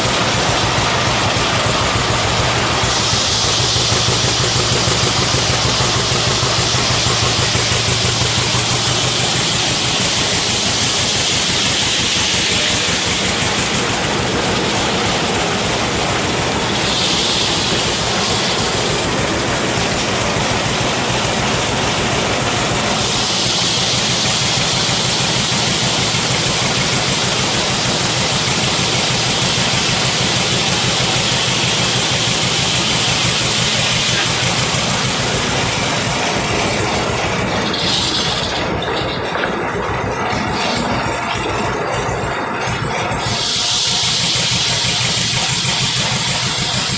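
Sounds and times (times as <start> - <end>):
engine driving a sawmill: 0.0 - 46.9
steady hiss: 1.7 - 19.1.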